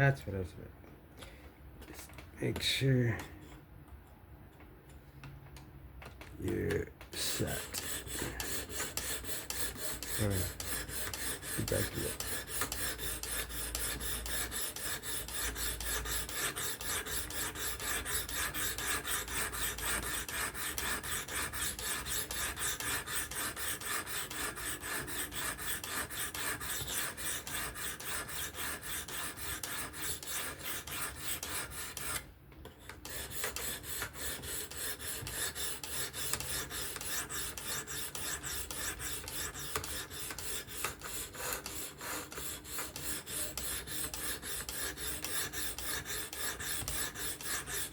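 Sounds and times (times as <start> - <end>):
sharpening stone rasping on blade: 7.2 - 32.2, 33.0 - 47.9.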